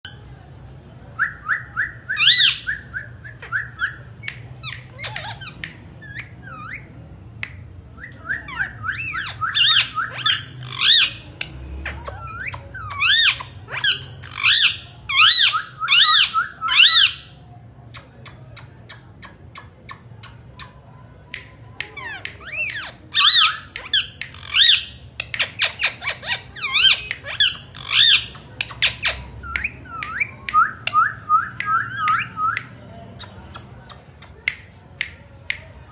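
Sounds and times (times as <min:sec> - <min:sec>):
parakeet squawking: 0:02.2 - 0:06.9, 0:08.5 - 0:17.3, 0:22.0 - 0:31.0.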